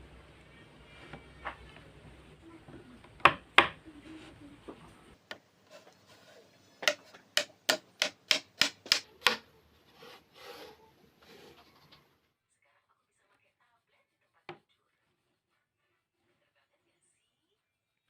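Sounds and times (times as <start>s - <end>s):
hammer striking wood: 3.2s - 3.8s, 6.8s - 9.4s.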